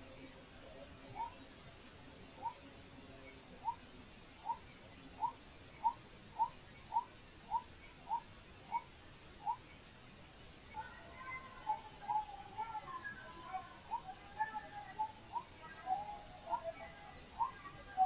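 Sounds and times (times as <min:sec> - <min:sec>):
crickets chirping: 0:00.0 - 0:18.0
faint chatter of higher calls: 0:10.6 - 0:18.0.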